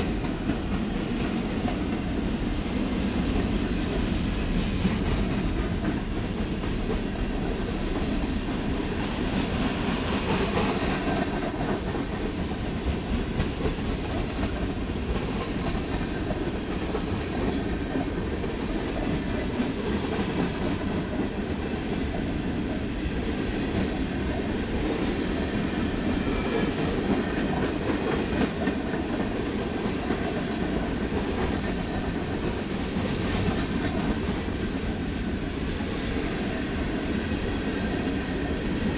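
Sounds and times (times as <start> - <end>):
freight train wheels on rail: 0.0 - 38.9.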